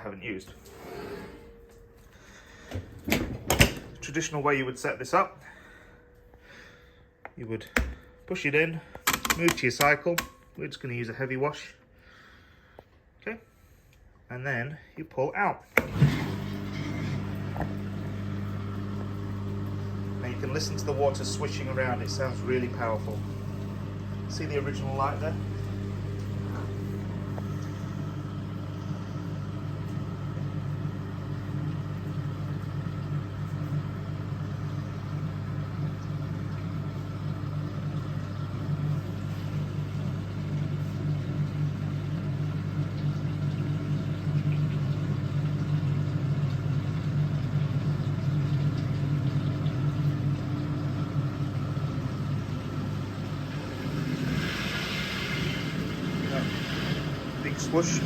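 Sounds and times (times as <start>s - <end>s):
dishwasher pump motor humming: 0.0s - 10.5s, 15.7s - 58.0s.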